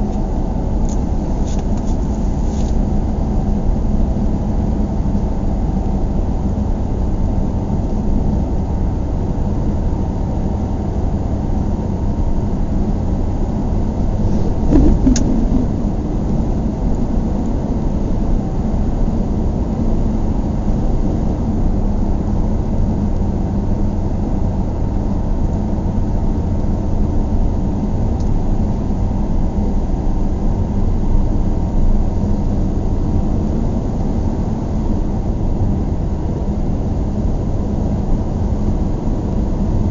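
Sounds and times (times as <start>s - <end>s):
car cabin road rumble: 0.0s - 4.3s, 13.5s - 18.5s
brief knock: 14.4s - 15.7s.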